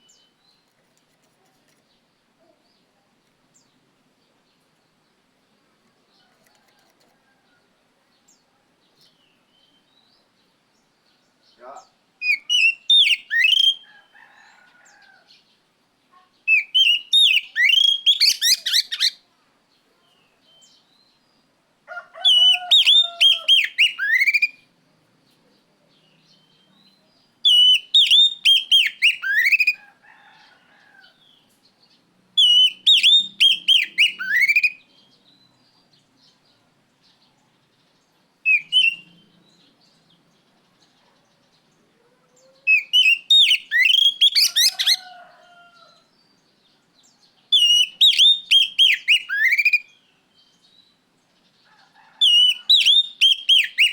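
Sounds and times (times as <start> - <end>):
bird singing whistled phrases: 12.2 - 13.9, 16.5 - 19.2, 22.3 - 24.6, 27.5 - 29.8, 32.4 - 34.8, 38.5 - 39.2, 42.7 - 45.0, 47.6 - 50.0, 52.3 - 53.9.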